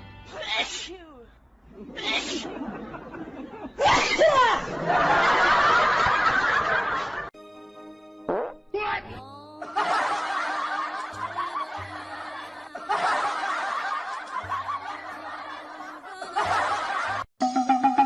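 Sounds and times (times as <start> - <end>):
background music: 0.0 - 0.6, 7.4 - 18.0
crowd laughing: 1.7 - 7.4, 9.6 - 17.3.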